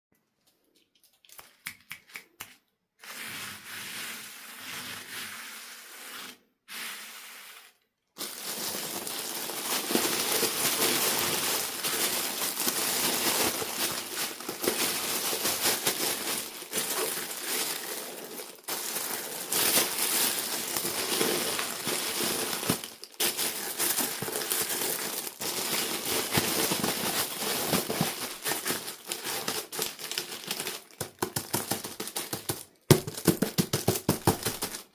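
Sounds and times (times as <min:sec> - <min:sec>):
toy packaging crinkling and tearing: 0:08.2 - 0:34.9.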